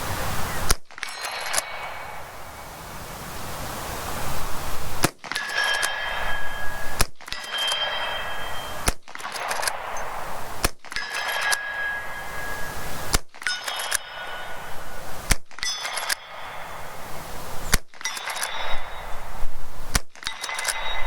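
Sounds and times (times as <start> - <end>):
metallic ringing ding: 1.0 - 2.7, 5.3 - 15.0, 15.6 - 17.1, 18.0 - 19.6, 20.2 - 21.0
rifle shots: 4.6 - 21.0.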